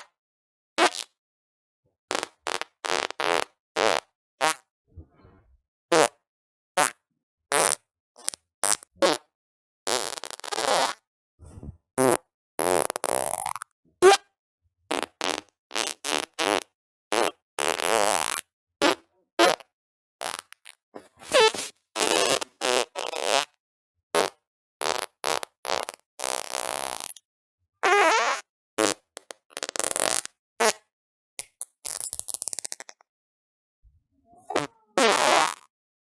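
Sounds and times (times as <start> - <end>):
fart sounds: 8.7 - 9.3, 9.9 - 13.5, 20.4 - 23.5, 27.8 - 30.9, 34.4 - 35.7.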